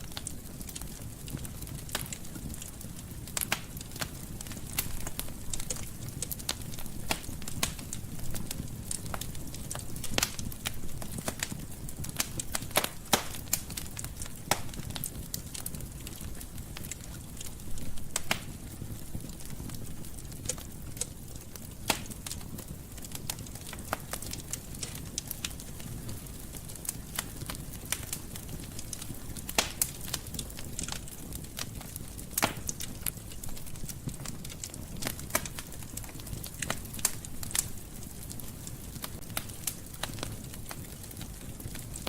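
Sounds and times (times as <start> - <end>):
fire crackling: 0.0 - 42.0
sharp pops and snaps: 0.1 - 16.2, 16.8 - 18.6, 20.4 - 22.4, 26.6 - 38.4.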